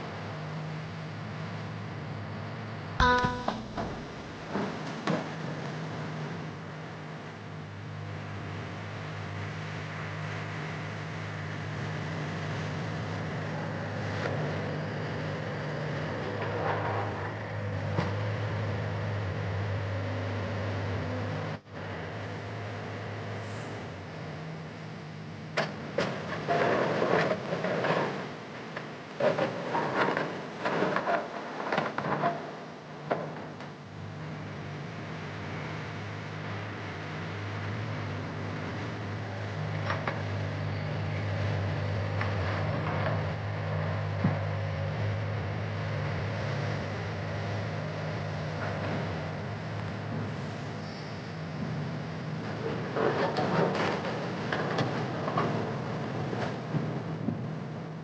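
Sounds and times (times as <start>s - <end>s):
diesel engine running: 1.4s - 25.5s, 34.3s - 57.7s
excavator clanks and knocks: 3.0s - 5.2s.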